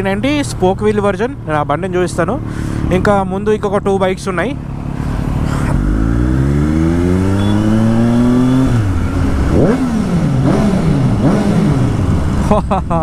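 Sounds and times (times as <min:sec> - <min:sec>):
motorcycle engine revving: 0:04.6 - 0:12.7.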